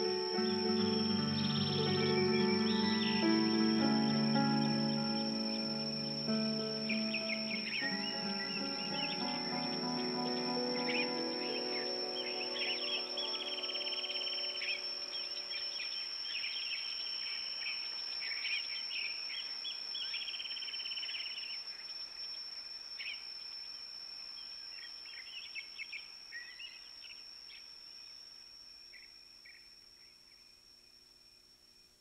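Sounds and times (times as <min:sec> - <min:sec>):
sustained background music: 0:00.0 - 0:15.6
birds singing and calling: 0:00.0 - 0:21.5
high-pitched insect trill: 0:00.0 - 0:31.9.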